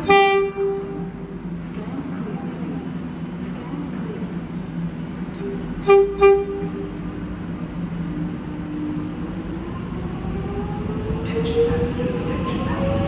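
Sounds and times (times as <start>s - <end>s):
electric train horn toots: 0.0s - 1.2s, 5.3s - 7.0s
rising train whine: 0.0s - 13.0s
train humming: 0.0s - 13.0s.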